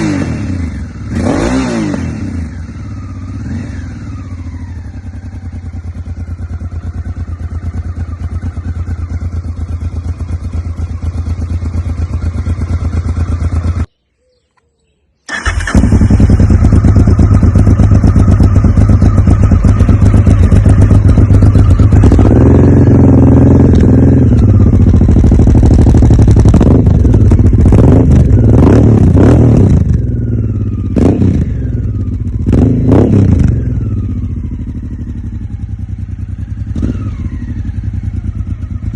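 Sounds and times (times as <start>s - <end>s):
motorcycle engine idling and revving: 0.0s - 14.0s, 15.2s - 38.9s.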